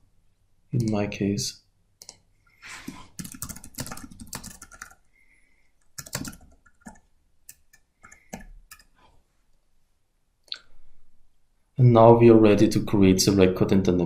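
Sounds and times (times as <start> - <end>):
computer keyboard typing: 2.9 - 5.1, 5.8 - 9.0.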